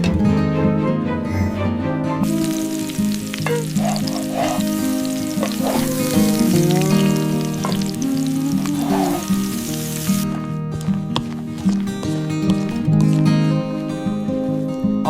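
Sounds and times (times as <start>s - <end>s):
background music: 0.0s - 15.0s
food sizzling in a pan: 2.2s - 10.3s.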